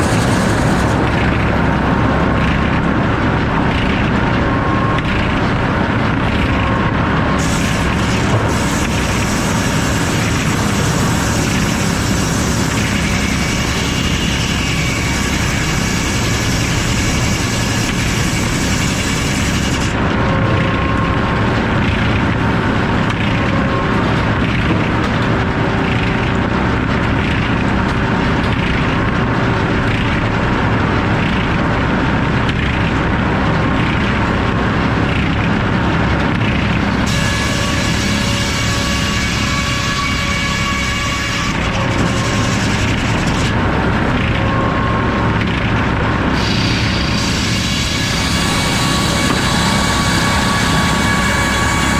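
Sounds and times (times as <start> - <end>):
sawmill machinery din: 0.0 - 51.9
saw blade hiss: 7.4 - 19.9, 46.4 - 51.9.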